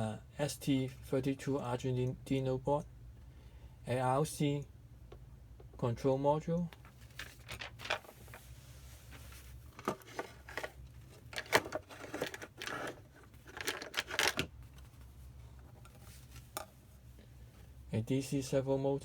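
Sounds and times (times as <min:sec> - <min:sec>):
low steady hum: 0:00.0 - 0:19.0
small parts clicking and rustling: 0:06.7 - 0:08.5, 0:09.1 - 0:15.0.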